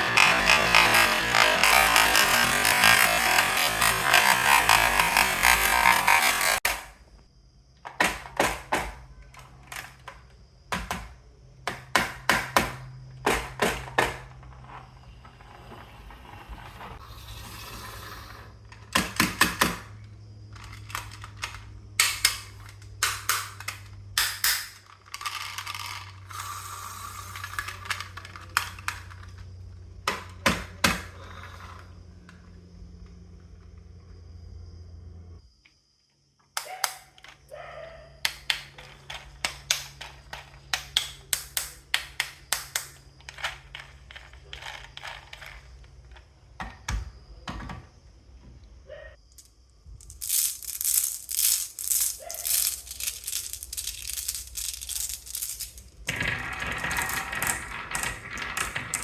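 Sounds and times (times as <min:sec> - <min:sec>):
marbles clacking down wooden run: 0:00.0 - 0:06.7, 0:20.5 - 0:29.5, 0:38.3 - 0:45.9, 0:49.4 - 0:59.0
marbles rolling softly: 0:19.9 - 0:23.0, 0:24.8 - 0:30.4, 0:42.5 - 0:46.6, 0:49.2 - 0:59.0.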